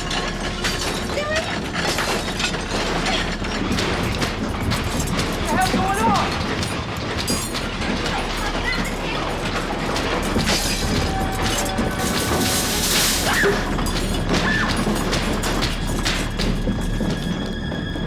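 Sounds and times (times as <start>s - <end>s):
heavy earthquake rumble: 0.0s - 18.0s
shaking objects rattling and crashing: 0.0s - 18.0s.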